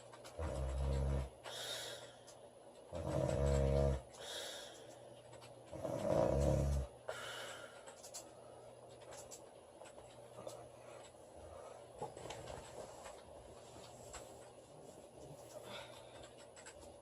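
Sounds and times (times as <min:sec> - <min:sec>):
breathy out-breath: 0:01.4 - 0:02.2, 0:04.2 - 0:05.0, 0:07.1 - 0:08.0
woman snoring: 0:02.9 - 0:04.0, 0:05.7 - 0:06.9.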